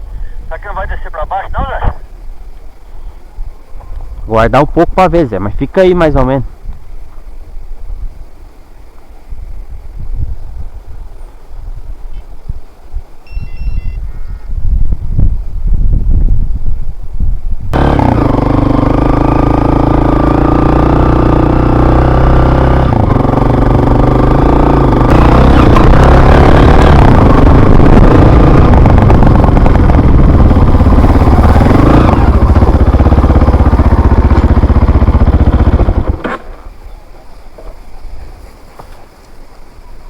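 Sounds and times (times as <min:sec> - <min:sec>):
vehicle engine running: 0:17.7 - 0:36.8.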